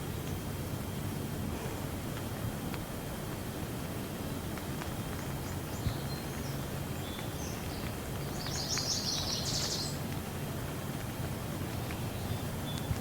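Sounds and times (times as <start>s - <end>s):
steady rain: 0.0s - 13.0s
raindrop ticks: 2.1s - 13.0s
small birds chirping: 5.1s - 10.4s, 11.6s - 13.0s.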